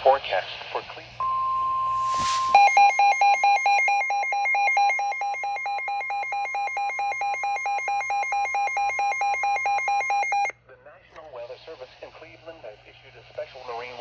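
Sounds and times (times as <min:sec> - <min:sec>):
two-pitch electronic alarm: 0:01.2 - 0:10.5.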